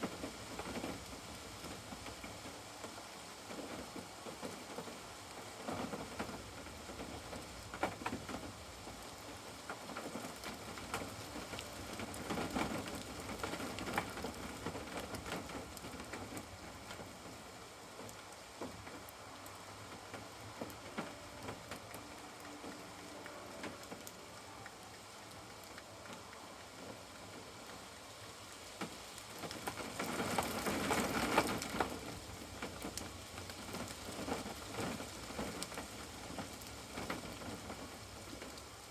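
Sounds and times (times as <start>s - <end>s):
rain hiss: 0.0s - 38.9s
raindrops ticking: 0.0s - 38.9s.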